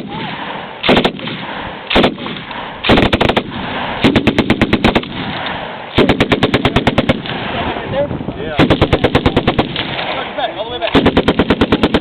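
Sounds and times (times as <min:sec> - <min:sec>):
machine gun bursts: 0:02.9 - 0:05.1, 0:06.0 - 0:07.2, 0:08.6 - 0:10.2, 0:10.8 - 0:12.0.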